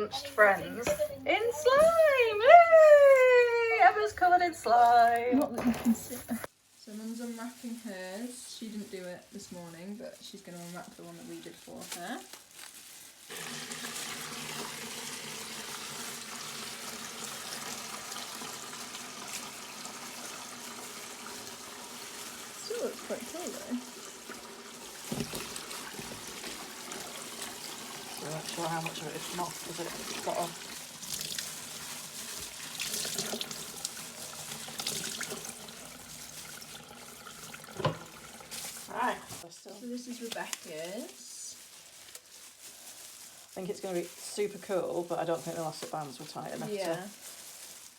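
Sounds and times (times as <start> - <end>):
water running from a tap: 13.3 - 39.4.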